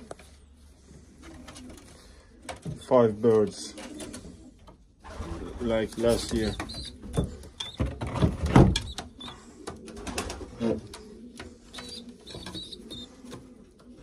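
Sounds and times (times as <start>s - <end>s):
pigeons cooing: 0.0s - 14.0s
knocks and rustles: 5.9s - 13.5s.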